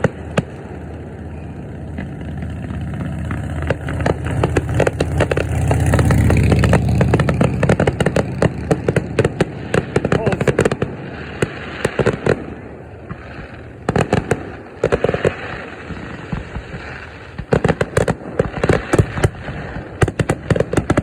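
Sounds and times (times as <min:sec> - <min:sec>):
fireworks cracking and popping: 0:00.0 - 0:21.0
vehicle engine passing: 0:00.6 - 0:11.8.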